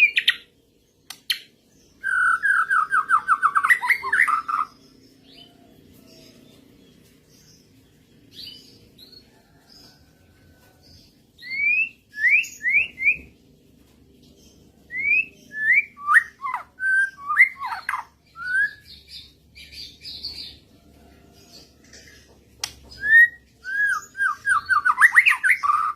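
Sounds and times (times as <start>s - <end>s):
songbird whistling: 2.0s - 4.7s, 11.4s - 13.3s, 14.9s - 19.0s, 22.9s - 25.9s.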